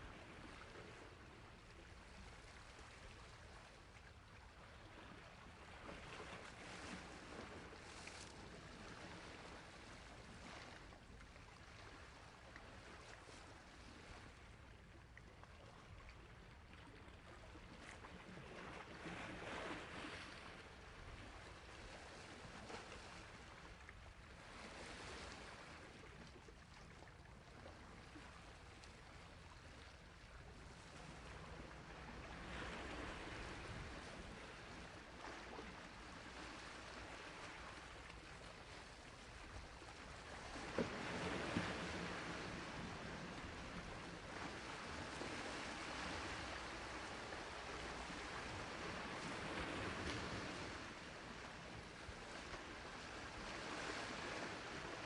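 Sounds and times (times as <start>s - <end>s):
faint sea waves washing ashore: 30.3s - 55.0s.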